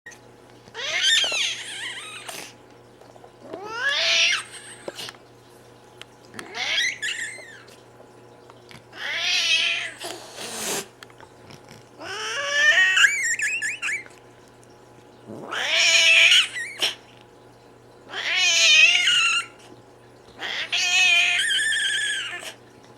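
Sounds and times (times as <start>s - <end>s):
cat crying squeakily: 0.8s - 2.4s, 3.6s - 4.7s, 6.5s - 7.7s, 9.0s - 10.0s, 12.0s - 14.1s, 15.5s - 17.0s, 18.1s - 19.6s, 20.4s - 22.5s
cat hissing: 0.8s - 2.6s, 9.0s - 11.0s.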